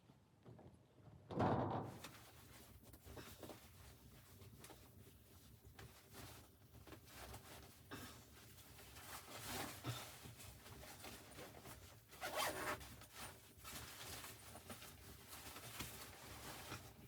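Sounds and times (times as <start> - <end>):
rasping strokes of clothing: 8.5 - 16.9.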